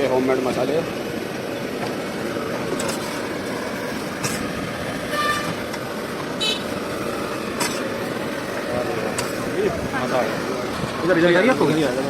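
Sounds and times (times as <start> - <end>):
street traffic din: 0.0 - 12.0
vehicle horn toots: 5.1 - 5.6, 6.4 - 6.7.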